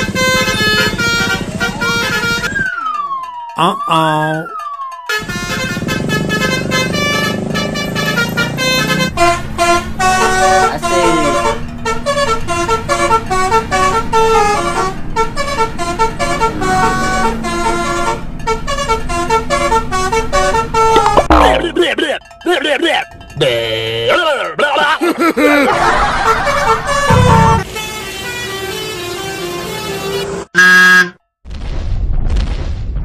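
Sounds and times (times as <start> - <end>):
bus horn playing a tune: 0.0 - 2.6, 5.1 - 21.7, 25.7 - 31.2.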